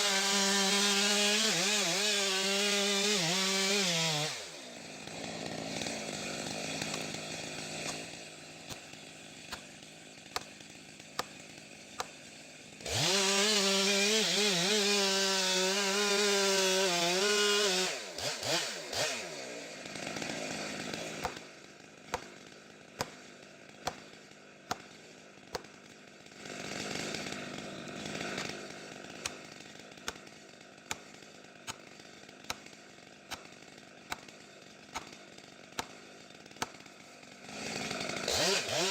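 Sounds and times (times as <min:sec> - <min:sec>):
chainsaw running: 0:00.0 - 0:38.9.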